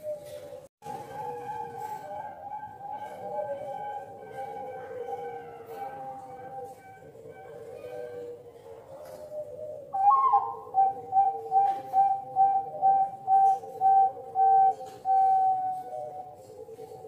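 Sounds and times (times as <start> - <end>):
bird whistling notes: 9.9 - 15.8
lower wavering whistle: 10.0 - 16.1.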